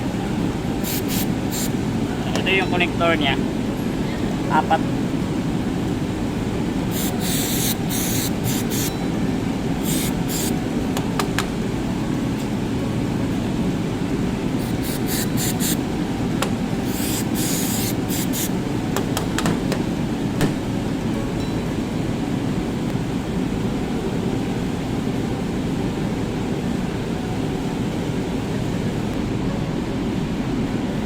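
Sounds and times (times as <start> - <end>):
aerosol spray hissing: 0.8 - 1.8, 6.9 - 9.0, 9.8 - 10.6, 14.6 - 15.8, 16.8 - 18.6.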